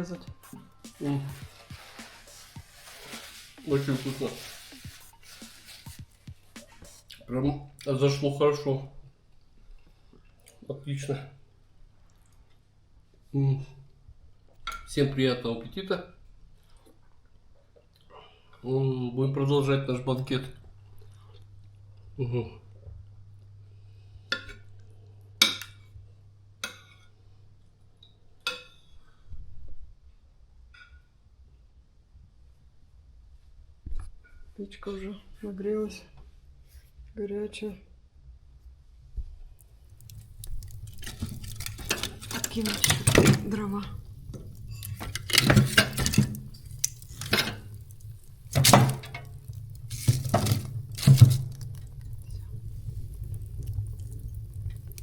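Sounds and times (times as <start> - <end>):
logs knocking against stove: 40.1 - 52.0
cutlery clinking against plates: 40.9 - 43.5, 44.8 - 47.6
soft low rumble: 49.2 - 55.0.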